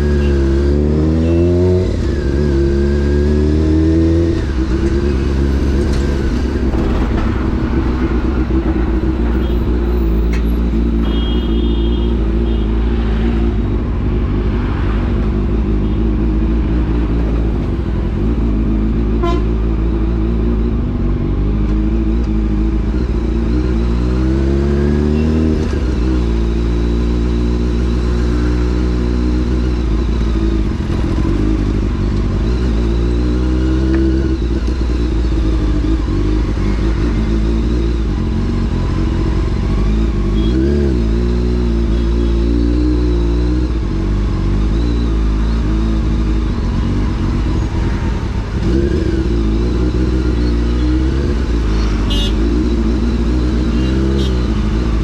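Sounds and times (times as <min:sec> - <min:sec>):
high horn beep: 0:00.2 - 0:01.9, 0:05.1 - 0:13.0, 0:19.1 - 0:19.7, 0:40.3 - 0:41.0, 0:51.8 - 0:52.9, 0:53.6 - 0:54.8
motorcycle engine running: 0:02.2 - 0:12.8, 0:43.2 - 0:55.0.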